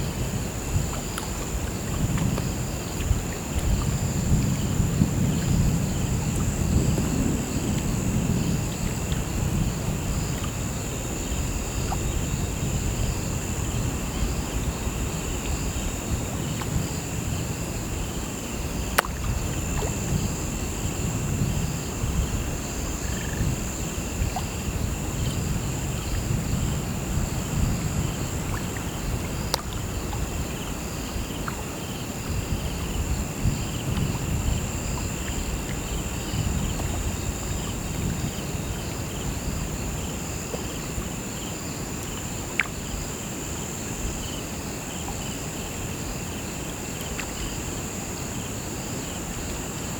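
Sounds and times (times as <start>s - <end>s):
crickets chirping: 0.0s - 49.9s
faint sharp ticks: 29.5s - 29.8s.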